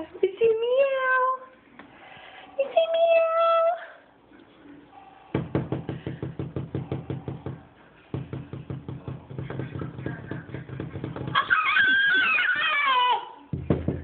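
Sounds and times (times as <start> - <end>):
rapid knocks: 5.3 - 11.5, 13.5 - 14.0.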